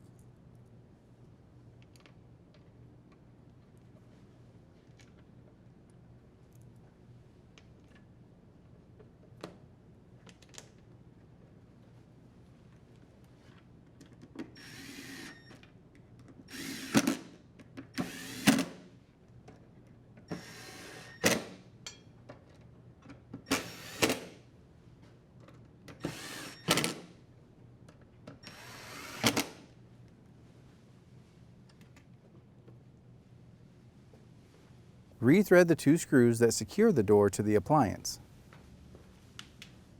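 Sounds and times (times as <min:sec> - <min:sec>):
drill driver driving screws: 0:18.0 - 0:18.7, 0:26.0 - 0:26.9, 0:28.5 - 0:29.5.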